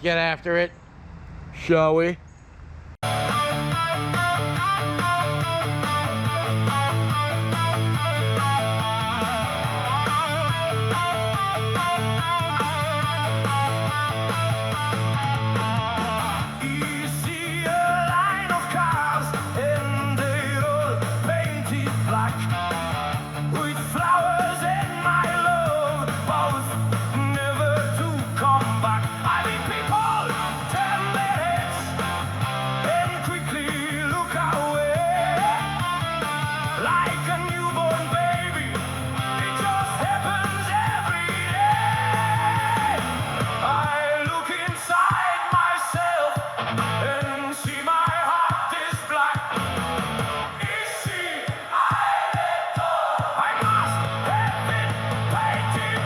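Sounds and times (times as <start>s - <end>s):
bass line: 3.0s - 43.8s, 46.6s - 47.2s, 49.6s - 50.6s, 53.6s - 56.0s
strummed guitar: 3.0s - 43.8s
person singing: 16.5s - 22.7s, 23.4s - 49.6s, 52.8s - 56.0s.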